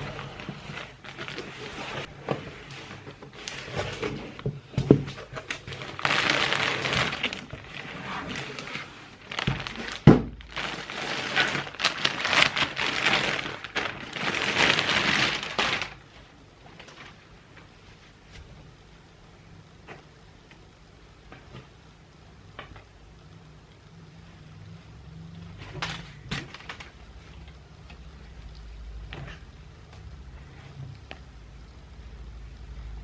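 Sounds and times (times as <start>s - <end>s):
plastic packaging crinkling: 0.0s - 17.3s, 25.5s - 28.0s.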